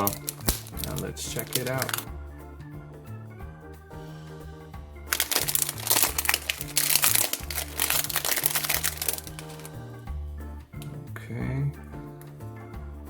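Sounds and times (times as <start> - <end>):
packaging crinkling: 0.0 - 2.0, 5.1 - 9.8
background music with bass line: 0.0 - 13.0.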